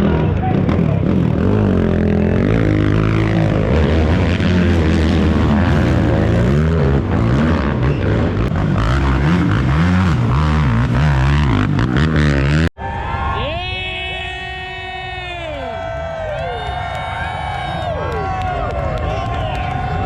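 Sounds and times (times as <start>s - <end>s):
atv engines revving: 0.0s - 12.7s.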